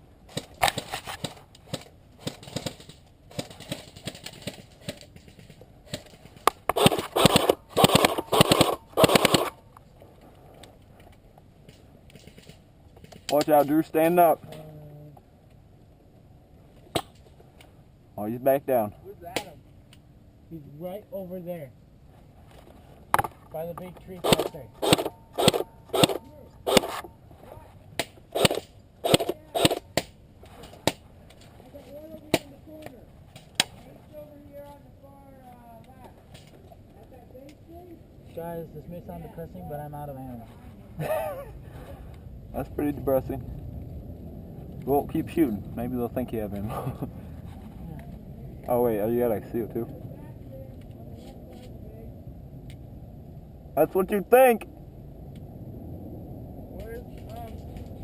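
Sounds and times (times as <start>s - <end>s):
airsoft gun bursts: 6.6s - 9.6s, 24.2s - 27.0s, 28.3s - 29.8s.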